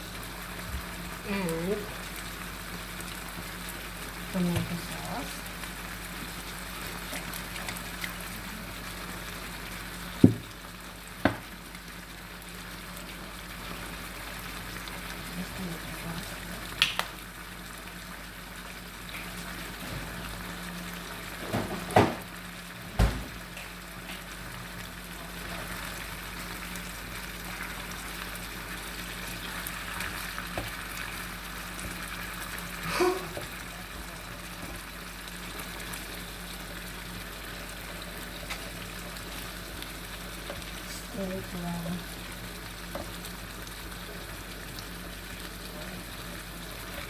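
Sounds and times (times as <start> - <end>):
sauce bubbling and sizzling: 0.0 - 47.0.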